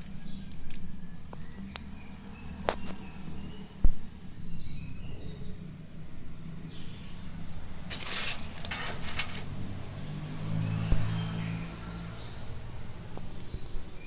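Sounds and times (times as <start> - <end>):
crinkling rustling scrape: 7.9 - 9.6.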